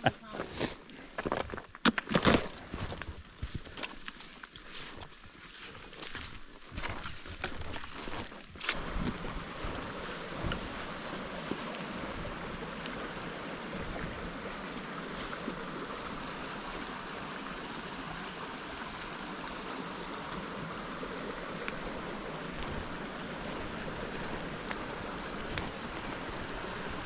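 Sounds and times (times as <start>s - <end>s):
flowing water rushing: 3.8s - 27.0s.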